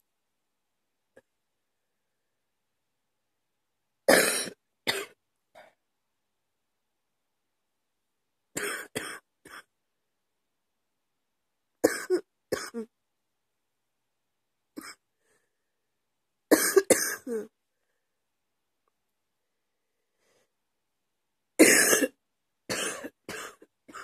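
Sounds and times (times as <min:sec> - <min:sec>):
woman coughing: 0:04.1 - 0:05.8, 0:08.6 - 0:09.7, 0:11.8 - 0:12.9, 0:16.5 - 0:17.5, 0:21.6 - 0:24.0.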